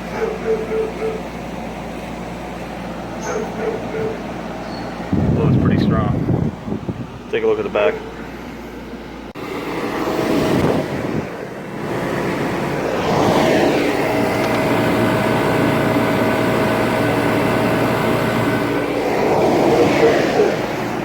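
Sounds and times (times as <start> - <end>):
air conditioner fan rushing: 0.0 - 21.0
motor hum: 8.0 - 21.0.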